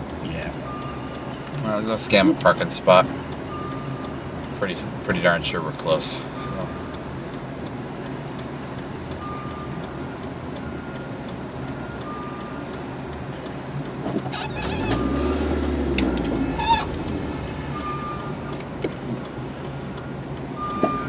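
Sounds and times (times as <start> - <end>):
car engine and road noise: 0.0 - 21.0
deep engine revving: 14.3 - 19.2.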